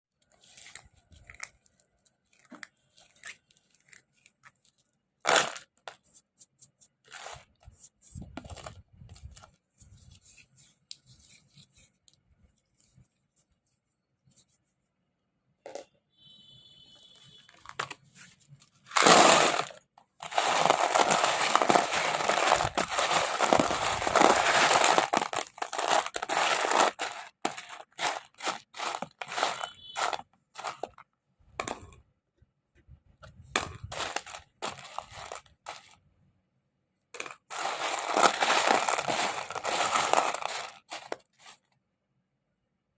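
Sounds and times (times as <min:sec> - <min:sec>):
mothballs crunching: 0:19.0 - 0:30.8, 0:33.8 - 0:35.9, 0:37.5 - 0:41.2
mothballs clicking and rustling: 0:19.0 - 0:30.9, 0:37.3 - 0:41.6.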